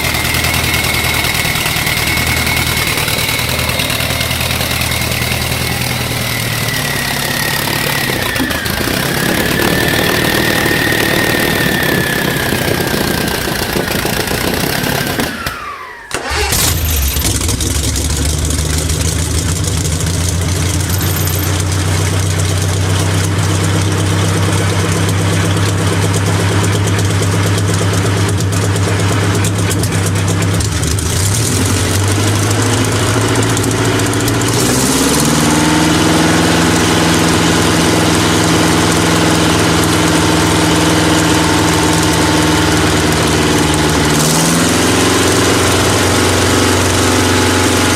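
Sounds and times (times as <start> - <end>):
engine whine falling in pitch: 0.0 - 27.1
engine starting and idling: 0.0 - 47.9.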